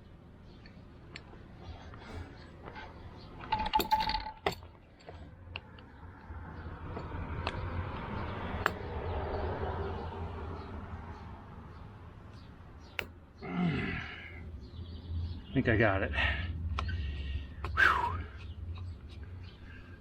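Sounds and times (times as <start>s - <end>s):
metal tools clinking and scraping: 3.4s - 4.8s.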